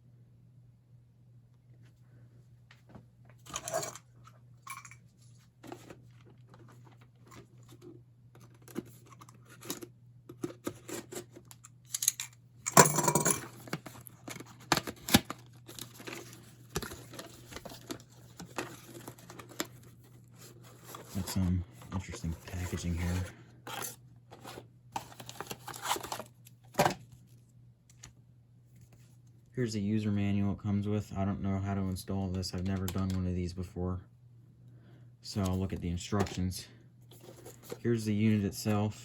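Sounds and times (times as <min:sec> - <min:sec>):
packaging rustling and tearing: 0:05.6 - 0:11.6, 0:13.5 - 0:26.4.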